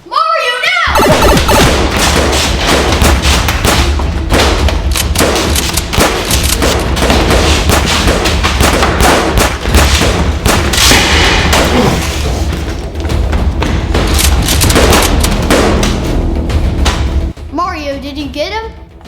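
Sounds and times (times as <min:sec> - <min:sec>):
foam dart blaster shots: 0:00.9 - 0:11.8.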